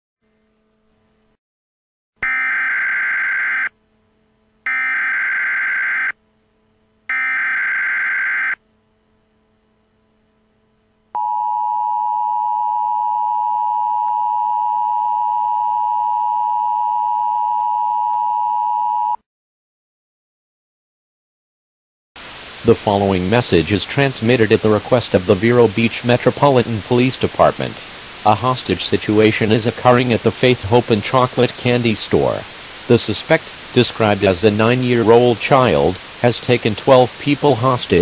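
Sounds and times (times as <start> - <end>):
two-tone alert signal: 2.2 - 3.7, 4.7 - 6.1, 7.1 - 8.6.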